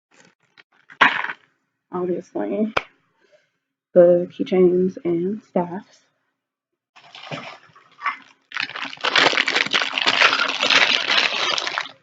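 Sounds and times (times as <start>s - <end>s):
packaging crinkling: 7.0s - 12.0s.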